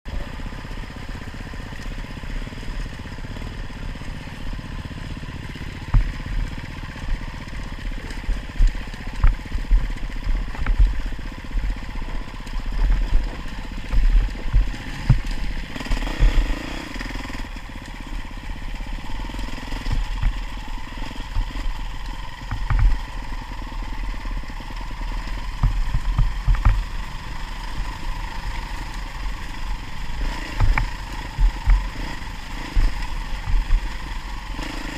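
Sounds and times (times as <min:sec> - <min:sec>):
motorcycle engine running: 0:00.1 - 0:34.9
short low thumps: 0:30.6 - 0:31.9.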